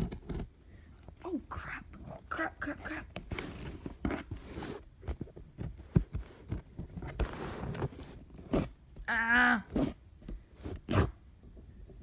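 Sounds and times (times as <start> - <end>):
packaging rustling and scraping: 0.0 - 0.5, 3.2 - 8.8.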